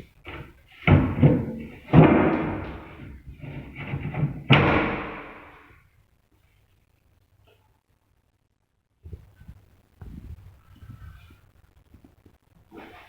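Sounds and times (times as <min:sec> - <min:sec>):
cabinet doors slamming: 0:00.3 - 0:05.7.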